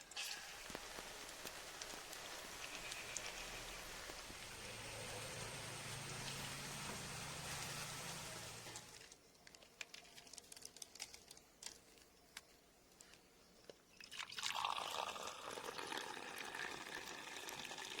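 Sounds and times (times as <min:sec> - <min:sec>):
food sizzling in hot fat: 0:00.0 - 0:09.0.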